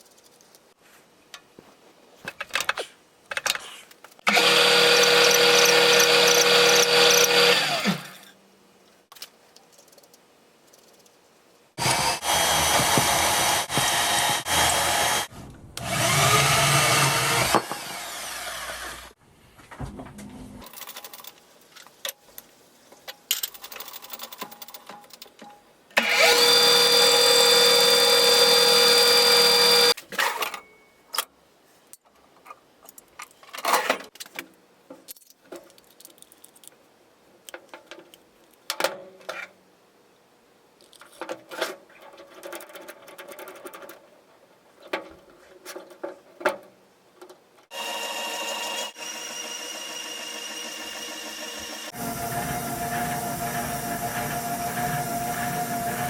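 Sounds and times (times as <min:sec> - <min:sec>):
machine tool motor whining: 0:04.3 - 0:08.2, 0:26.0 - 0:30.0, 0:47.7 - 0:56.0.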